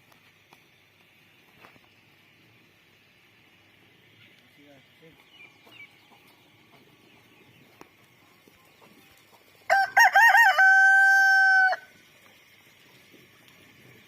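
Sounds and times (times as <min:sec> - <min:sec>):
rooster crowing: 0:09.7 - 0:11.9.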